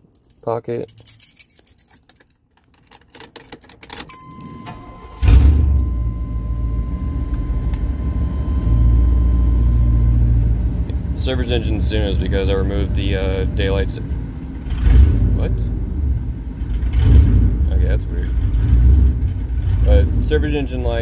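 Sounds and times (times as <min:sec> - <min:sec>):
keys jangling: 0:00.0 - 0:04.8
truck engine cranking and running: 0:02.6 - 0:21.0
steady electronic tone: 0:04.1 - 0:10.8.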